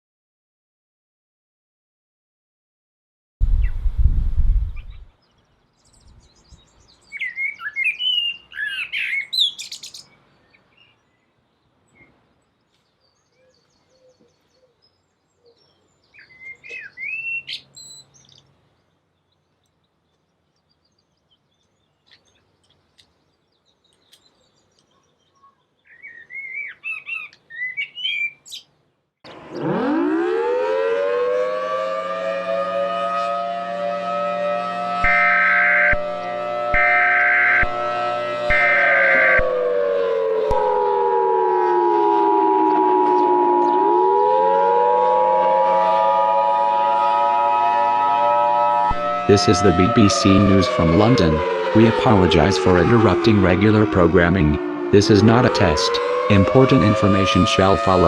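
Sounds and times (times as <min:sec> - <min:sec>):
birds chirping: 0:03.5 - 0:58.0
civil defence siren wailing: 0:29.3 - 0:58.0.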